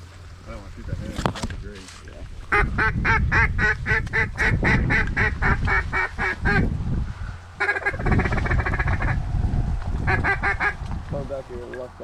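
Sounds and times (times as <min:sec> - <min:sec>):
wind buffeting microphone: 0:00.0 - 0:12.0
duck quacking: 0:02.5 - 0:06.7, 0:07.6 - 0:09.2, 0:10.1 - 0:10.8.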